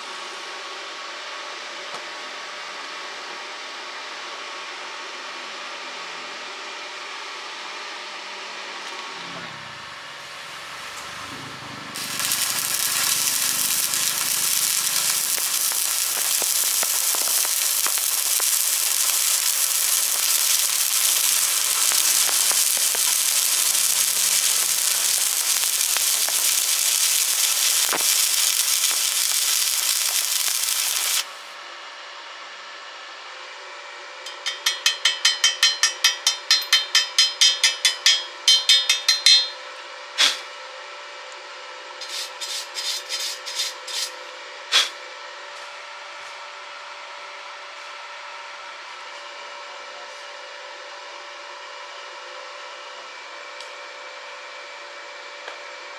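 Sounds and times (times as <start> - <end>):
welding arc crackling and sizzling: 10.2 - 31.6, 34.3 - 39.6, 40.2 - 40.5, 42.0 - 45.0
metallic scraping strokes: 42.0 - 44.2.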